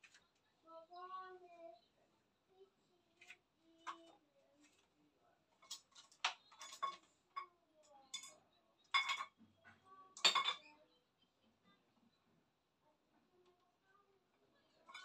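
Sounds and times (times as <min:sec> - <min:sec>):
dishes and cutlery clinking: 0:05.6 - 0:10.7.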